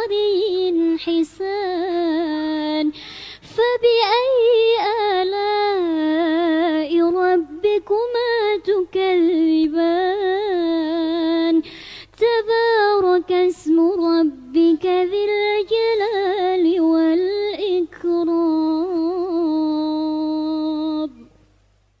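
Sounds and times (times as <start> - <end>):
girl chanting melodically: 0.0 - 21.3
girl breathing in: 3.0 - 3.5, 11.6 - 12.2.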